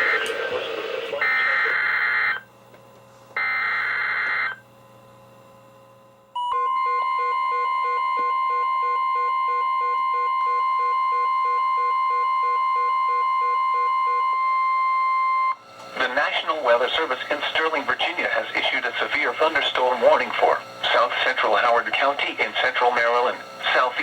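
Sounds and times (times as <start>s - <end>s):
warning alarm tone: 6.4s - 15.6s.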